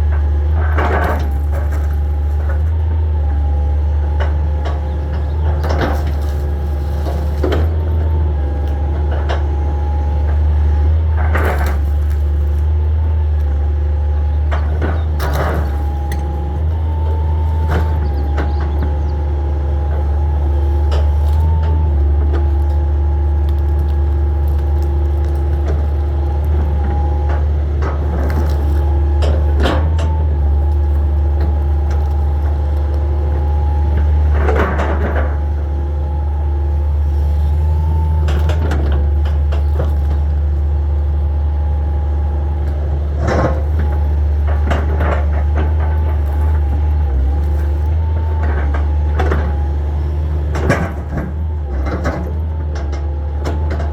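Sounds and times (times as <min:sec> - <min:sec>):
excavator diesel engine droning: 0:00.0 - 0:53.9
wood debris cracking: 0:11.4 - 0:12.7, 0:19.8 - 0:35.6.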